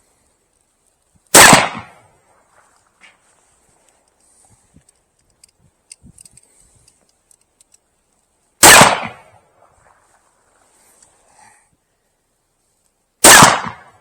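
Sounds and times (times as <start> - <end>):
revolver gunshot: 1.3 - 2.0, 8.6 - 9.3, 13.2 - 13.9
faint clicks: 2.7 - 8.4, 10.8 - 11.2.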